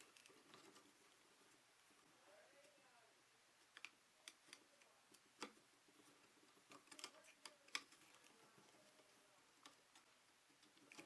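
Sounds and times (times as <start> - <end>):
small clicks and taps of wiring: 3.6 - 11.0.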